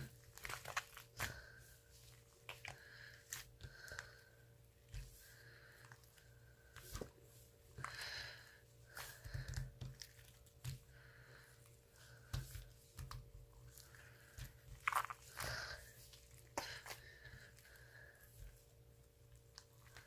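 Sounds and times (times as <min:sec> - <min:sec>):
slime squished by hand: 0:00.0 - 0:01.4, 0:12.2 - 0:17.0
faint steady hum: 0:00.0 - 0:20.0.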